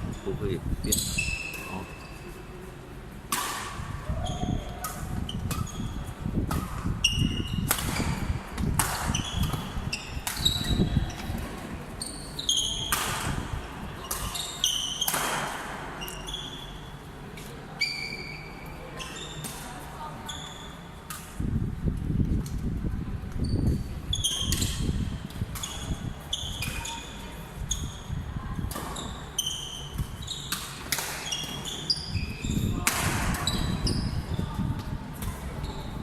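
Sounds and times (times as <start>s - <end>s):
shoes squeaking on court floor: 0.1s - 2.5s, 4.1s - 13.3s, 13.9s - 15.2s, 15.9s - 17.0s, 17.8s - 21.2s, 23.4s - 28.1s, 28.7s - 36.0s
murmur of voices: 32.4s - 36.0s.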